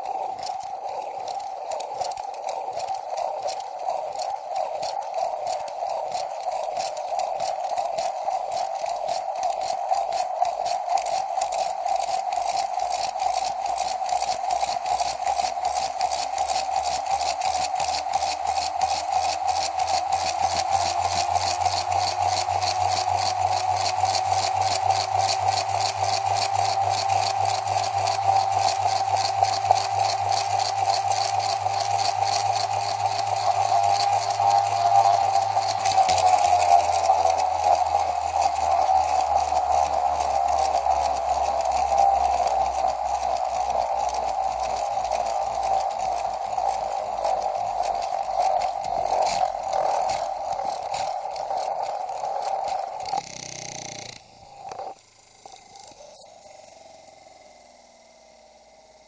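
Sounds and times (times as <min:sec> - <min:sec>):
gyroscope rotor whirring: 0:00.0 - 0:59.0.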